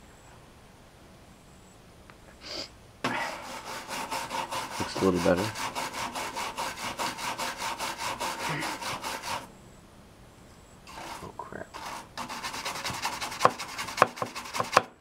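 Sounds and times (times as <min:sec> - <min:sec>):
scrubbing plastic case: 0:03.1 - 0:09.5, 0:10.9 - 0:14.8.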